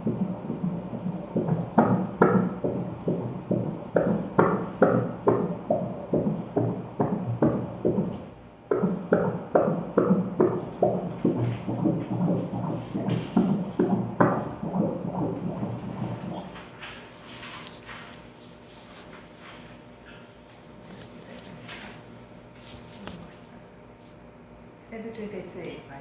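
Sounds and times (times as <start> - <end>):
doppler heartbeat whooshing pulse: 0.0 - 16.6.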